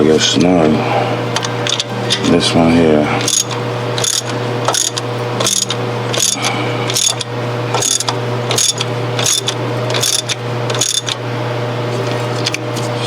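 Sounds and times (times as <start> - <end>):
steady low hum: 0.0 - 13.0
ratchet wrench clicking: 3.2 - 11.2.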